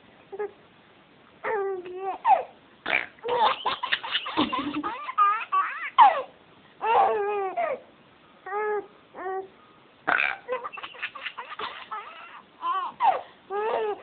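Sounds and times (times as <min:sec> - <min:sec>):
baby squealing and laughing: 0:03.2 - 0:07.8, 0:10.4 - 0:14.0.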